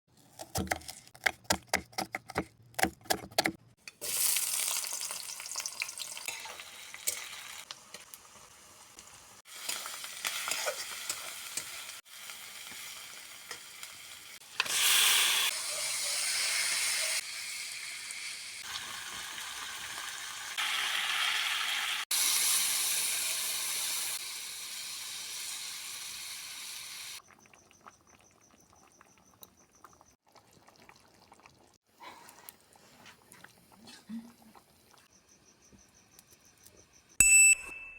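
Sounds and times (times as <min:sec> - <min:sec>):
food sizzling in hot oil: 0:03.9 - 0:27.2.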